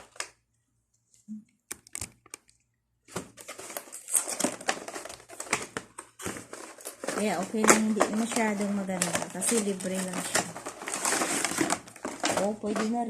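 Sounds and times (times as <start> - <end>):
packaging rustling and crinkling: 0.0 - 0.4, 3.1 - 13.0
packaging clicks: 3.1 - 13.0.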